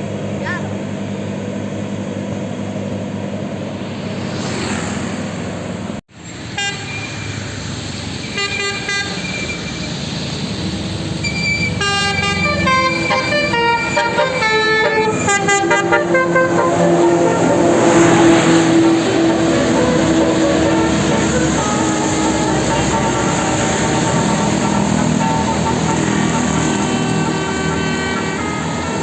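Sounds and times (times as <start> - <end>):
low engine drone: 0.0 - 6.0, 9.6 - 29.0
multi-tone musical bus horn: 6.6 - 7.2, 8.4 - 9.6, 11.3 - 29.0.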